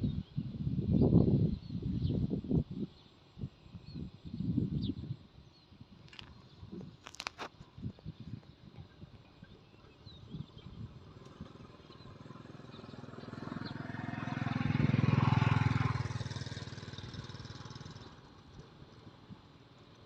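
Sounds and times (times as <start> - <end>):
vehicle engine passing by: 11.0 - 18.7.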